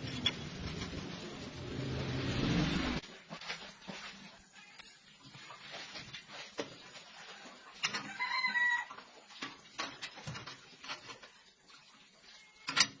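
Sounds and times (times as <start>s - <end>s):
rooster crowing: 7.3s - 8.9s.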